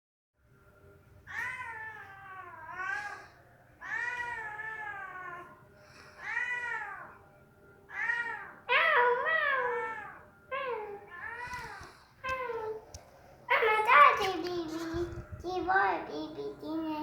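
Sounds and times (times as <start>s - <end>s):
cat meowing: 1.3s - 5.6s, 6.2s - 7.2s, 7.9s - 12.7s.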